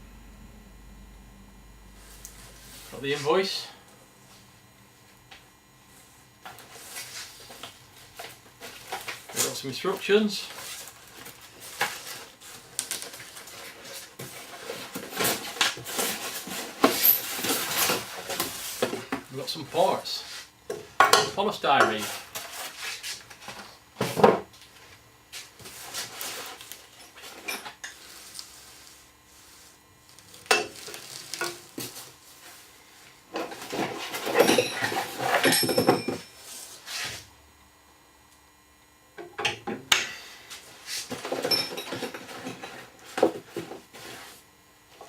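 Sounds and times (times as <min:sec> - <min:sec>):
polystyrene scraping and squeaking: 0:28.0 - 0:32.0.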